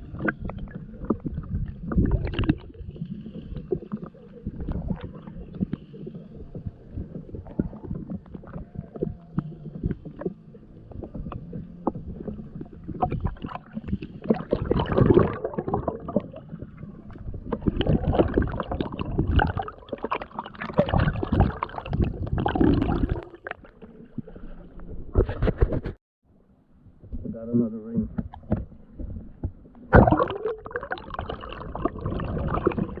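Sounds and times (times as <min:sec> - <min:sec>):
stones and gravel clicking underwater: 0:00.0 - 0:05.9
water rushing and gurgling: 0:29.9 - 0:33.0.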